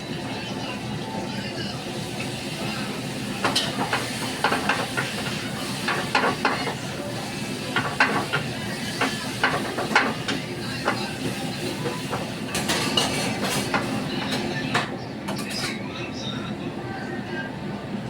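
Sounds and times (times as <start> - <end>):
food sizzling in hot oil: 0.0 - 14.2.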